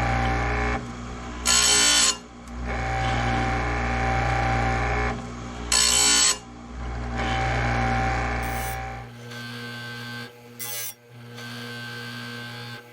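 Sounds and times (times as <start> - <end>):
chain grinder motor hum: 0.0 - 12.9
grinding wheel on metal: 5.7 - 6.4, 7.2 - 9.1.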